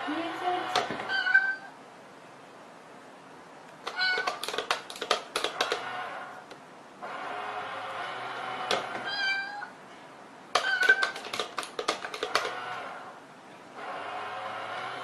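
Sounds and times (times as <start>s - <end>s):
cat meowing: 1.0s - 1.8s, 3.9s - 4.4s, 9.0s - 9.8s, 10.6s - 11.2s.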